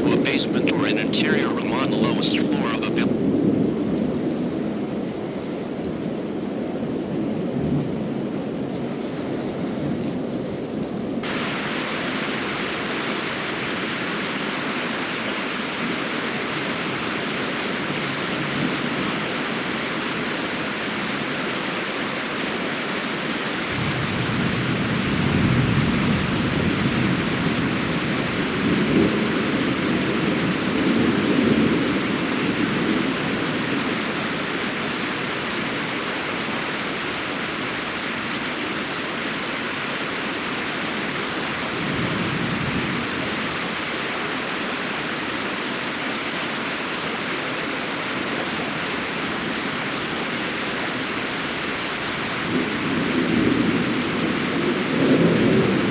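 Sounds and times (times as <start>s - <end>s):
steady rain: 0.0s - 55.9s
rolling thunder: 23.7s - 33.8s.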